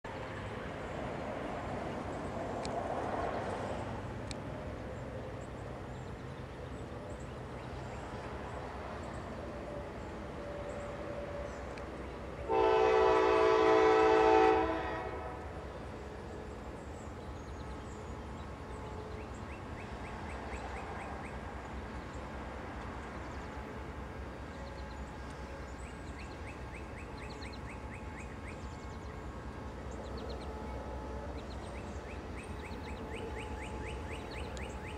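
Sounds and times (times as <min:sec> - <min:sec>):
low rumble of trains: 0:00.0 - 0:34.9
locomotive air horn blast: 0:12.4 - 0:15.6.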